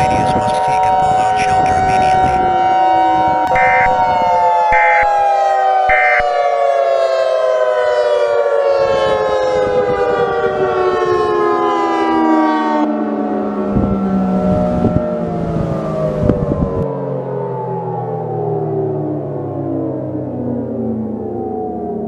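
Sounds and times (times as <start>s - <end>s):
civil defense siren winding down: 0.0s - 22.0s
digital data bursts: 3.5s - 4.0s, 4.8s - 5.1s, 5.9s - 6.3s.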